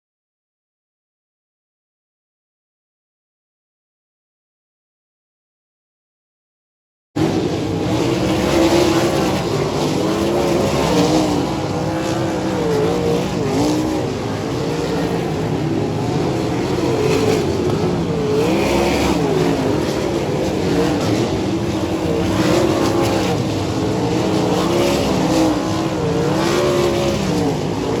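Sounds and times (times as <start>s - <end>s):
race car engines revving: 7.2s - 28.0s.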